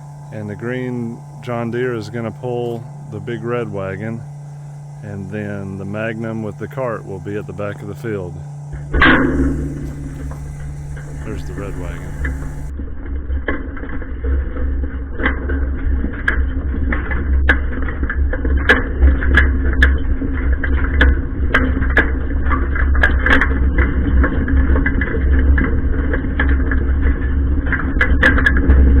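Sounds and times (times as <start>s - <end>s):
tractor engine droning: 0.0s - 12.7s
loose metal rattling: 8.8s - 12.7s.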